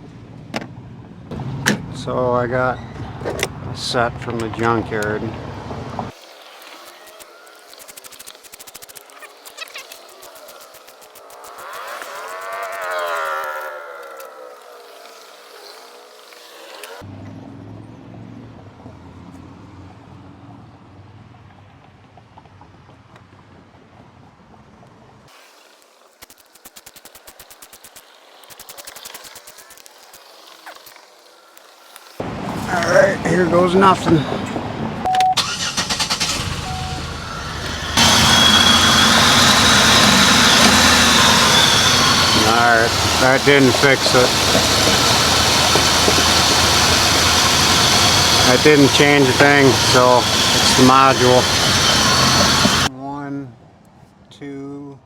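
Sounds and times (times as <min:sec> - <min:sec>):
car engine idling with misfire: 0:35.4 - 0:52.9.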